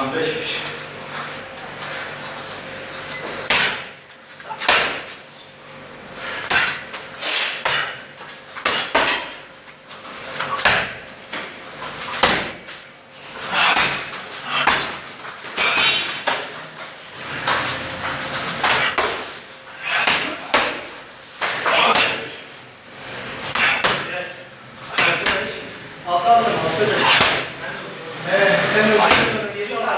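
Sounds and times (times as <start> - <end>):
sharp thuds and slaps: 3.4 - 4.0, 4.6 - 5.2, 6.4 - 8.0, 10.5 - 12.8, 13.6 - 16.6, 18.4 - 19.3, 23.4 - 24.1, 29.0 - 29.5.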